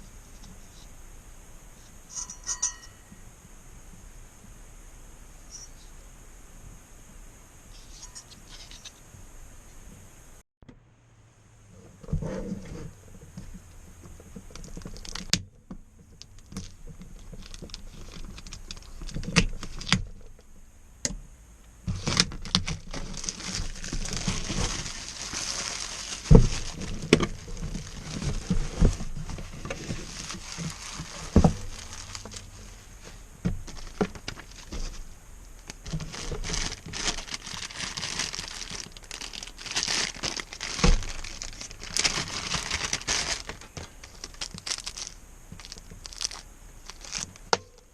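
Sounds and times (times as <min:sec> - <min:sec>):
packaging rustling and crinkling: 0:12.4 - 0:15.4, 0:16.0 - 0:20.4, 0:21.9 - 0:47.9.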